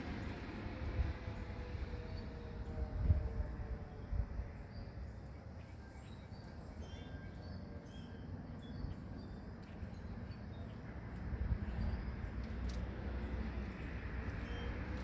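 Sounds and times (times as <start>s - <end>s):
wind rumbling on microphone: 0.7s - 5.0s.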